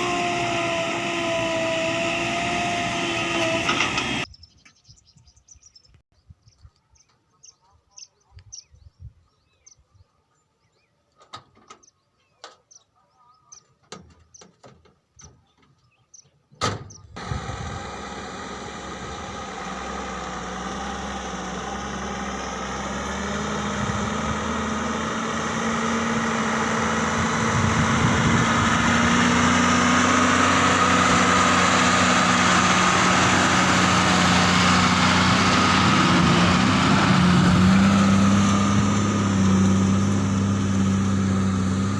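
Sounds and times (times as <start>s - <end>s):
heavy diesel engine running: 0.0s - 4.3s, 17.2s - 41.9s.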